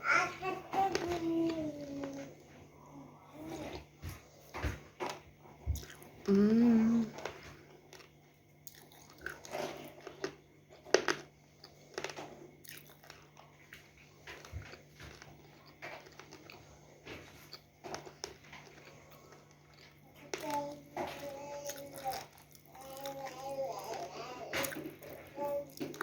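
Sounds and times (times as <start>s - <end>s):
close-up biting and chewing: 8.0s - 10.4s, 11.0s - 24.0s.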